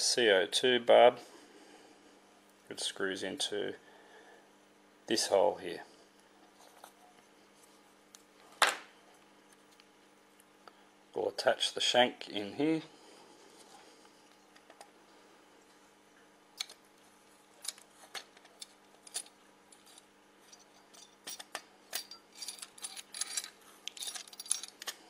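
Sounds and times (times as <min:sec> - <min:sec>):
light metallic clicks and clinks: 0:18.6 - 0:25.0.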